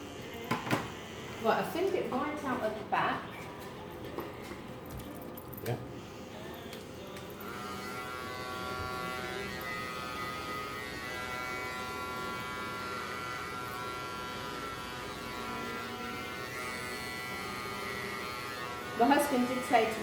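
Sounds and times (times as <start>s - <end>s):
electric hair trimmers buzzing: 7.1s - 20.0s.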